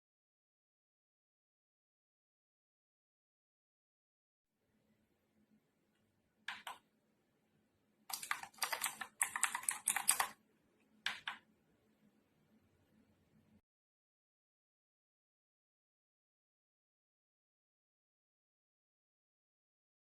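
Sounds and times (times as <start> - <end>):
mechanical keyboard keystrokes: 8.1 - 10.4.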